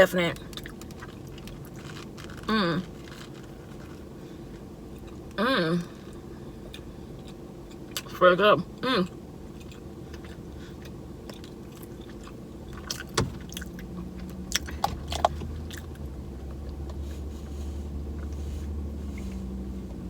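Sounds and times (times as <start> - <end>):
low steady hum: 0.0 - 20.0
person chewing: 0.5 - 8.1, 9.5 - 17.2.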